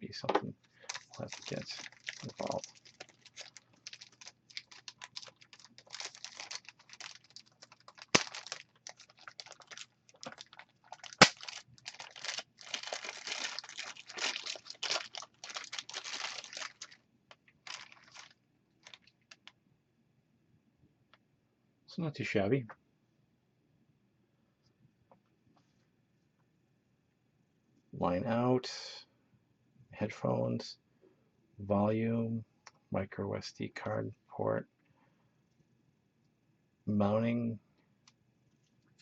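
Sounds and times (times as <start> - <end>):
packaging crinkling: 0.8 - 19.5.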